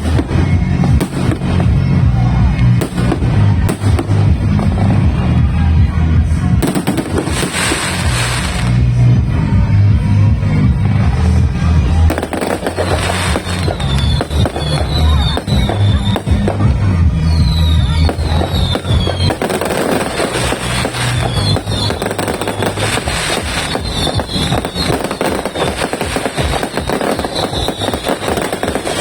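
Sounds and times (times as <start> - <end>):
fireworks barrage with crackles: 0.0 - 29.0
loud music: 0.0 - 29.0.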